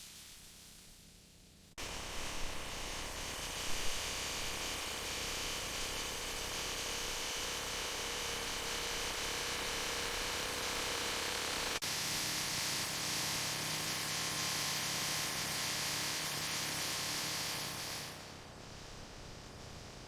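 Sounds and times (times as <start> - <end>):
steady hissing noise: 15.7 - 20.0.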